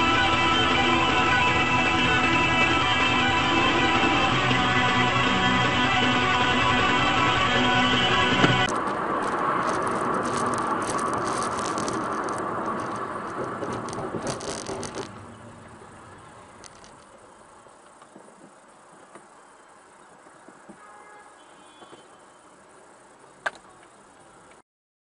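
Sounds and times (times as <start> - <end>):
mechanical rattling and clatter: 8.6 - 15.8.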